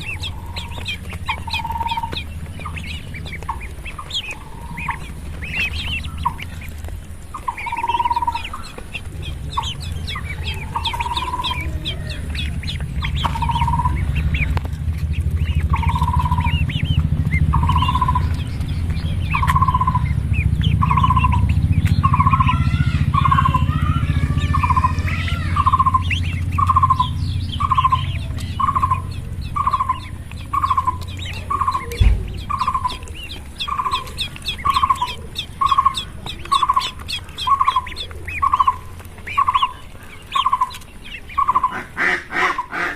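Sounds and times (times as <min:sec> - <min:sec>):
duck chicks peeping: 0:00.0 - 0:42.9
steady low hum: 0:00.0 - 0:42.9
lower repeated peep: 0:13.1 - 0:14.0, 0:15.7 - 0:16.7, 0:17.4 - 0:18.4, 0:19.3 - 0:23.7, 0:24.6 - 0:36.0.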